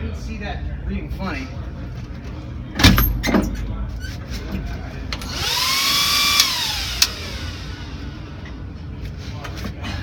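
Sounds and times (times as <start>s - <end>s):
power tool motor spinning: 5.2s - 7.6s.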